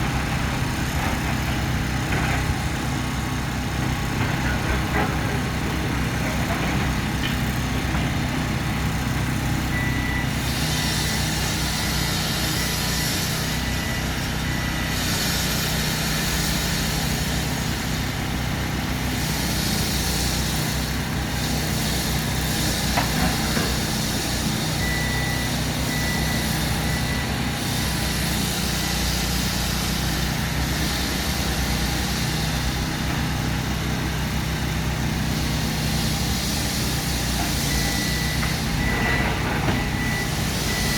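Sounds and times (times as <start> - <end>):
heavy machine engine running: 0.0 - 40.9
reversing alarm beeps: 8.5 - 16.2, 22.8 - 30.9, 36.1 - 40.9.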